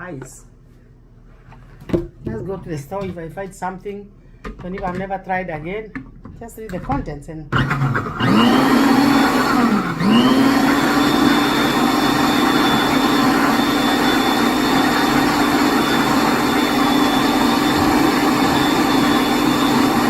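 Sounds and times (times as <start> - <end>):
electric blender motor whining: 7.6 - 20.0.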